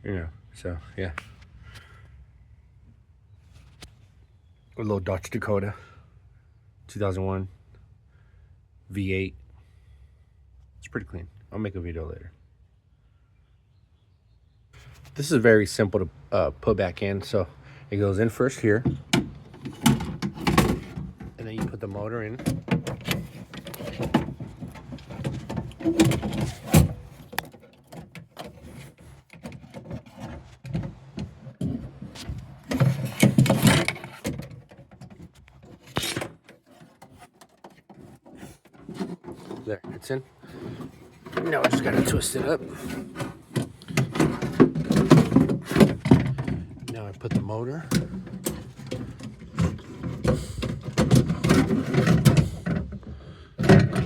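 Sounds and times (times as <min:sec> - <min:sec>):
metal scraping: 0:18.3 - 0:52.8
metal clicks and knocks: 0:18.6 - 0:54.0.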